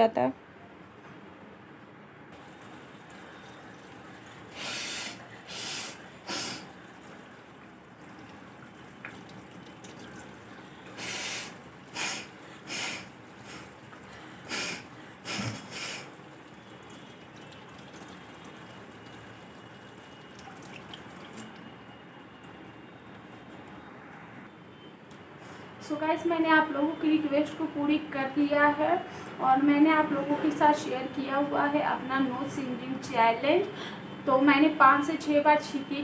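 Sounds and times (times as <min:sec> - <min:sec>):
person snorting air through nose: 0:04.5 - 0:06.7, 0:11.0 - 0:13.7, 0:14.4 - 0:16.1.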